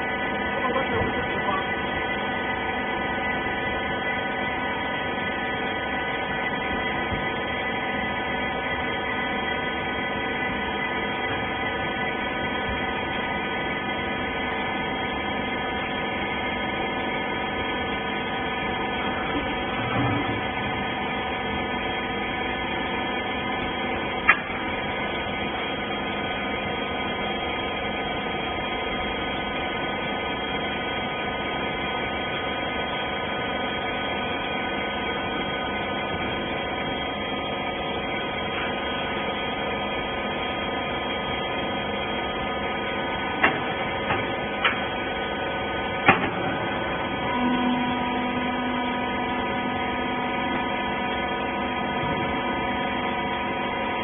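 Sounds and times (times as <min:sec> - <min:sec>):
baler motor and pump humming: 0:00.0 - 0:54.0
steady tone: 0:47.2 - 0:54.0.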